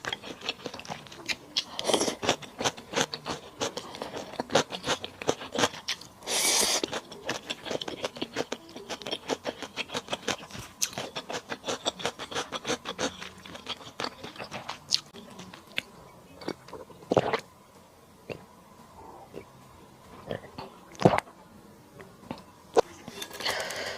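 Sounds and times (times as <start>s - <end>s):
close chewing with mouth clicks: 0.0s - 17.4s.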